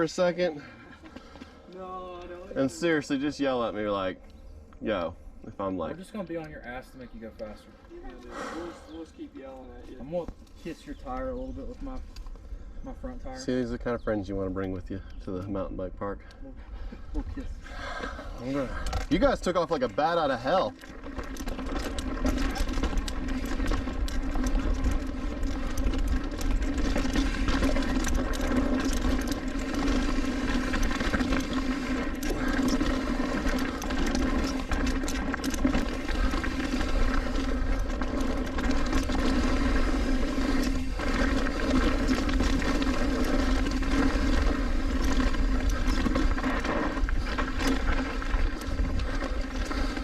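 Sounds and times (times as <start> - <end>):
bike tyres rolling on dirt: 0.0 - 50.0
bike rattles and knocks: 18.6 - 50.0.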